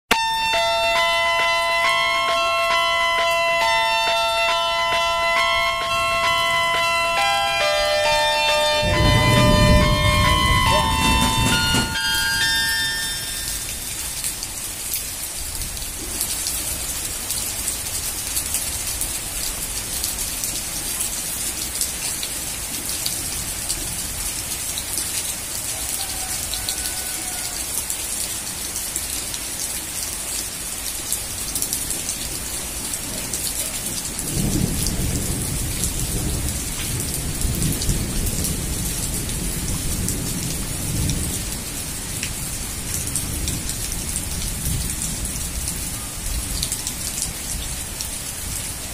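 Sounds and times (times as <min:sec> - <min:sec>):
heavy rain falling: 0:00.1 - 0:48.9
loud low rumble: 0:08.8 - 0:12.6.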